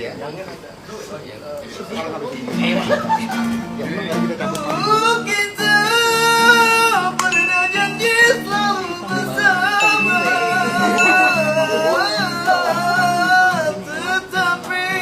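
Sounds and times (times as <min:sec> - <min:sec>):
strummed acoustic guitar: 0:02.4 - 0:15.0
person singing: 0:04.6 - 0:15.0.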